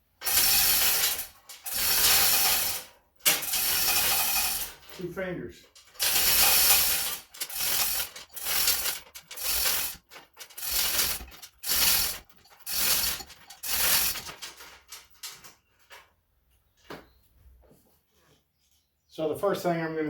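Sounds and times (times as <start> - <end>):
ratchet clicking: 0.2 - 4.9, 5.8 - 14.6
hoist chain rattling: 0.2 - 15.5.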